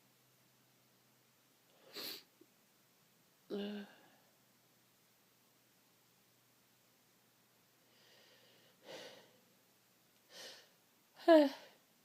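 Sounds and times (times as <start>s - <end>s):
quiet breathing: 3.5s - 4.4s, 7.7s - 9.6s, 10.2s - 12.0s.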